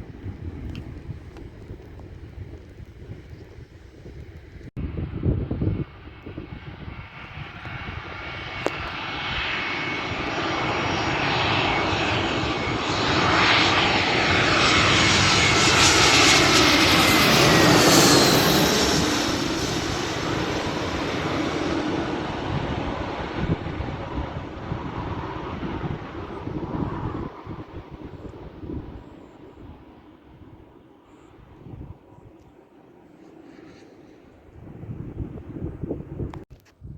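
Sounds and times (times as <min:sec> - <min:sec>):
wind gust on microphone: 0:00.0 - 0:32.4, 0:34.0 - 0:36.9
airliner engines passing: 0:00.0 - 0:36.4.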